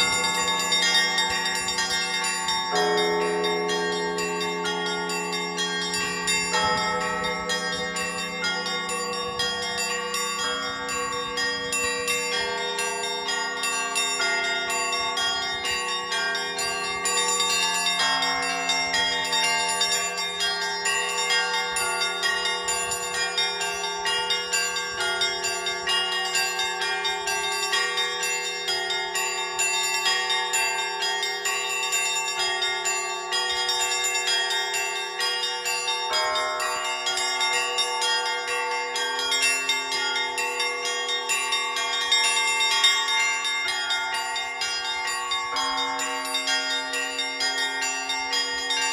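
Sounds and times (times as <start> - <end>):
church bells pealing: 0.0 - 48.9
low bell hum: 0.0 - 48.9.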